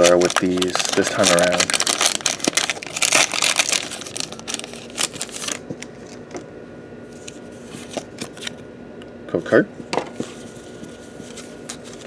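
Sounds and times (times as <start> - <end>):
foil wrapper crinkling: 0.0 - 6.2.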